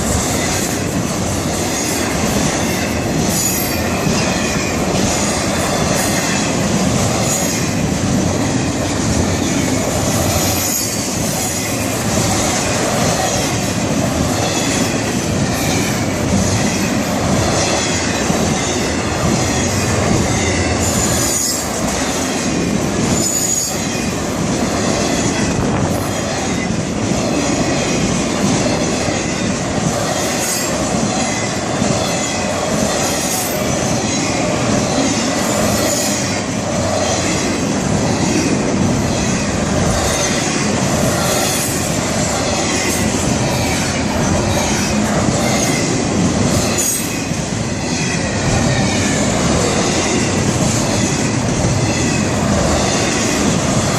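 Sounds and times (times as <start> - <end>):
freight train rumbling past: 0.0 - 53.9.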